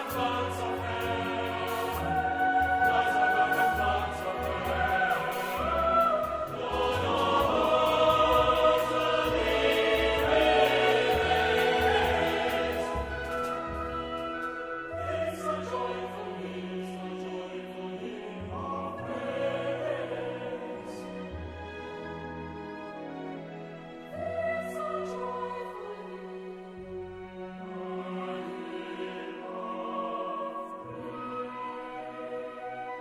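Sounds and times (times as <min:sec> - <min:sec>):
choir singing sacred music: 0:00.0 - 0:33.0.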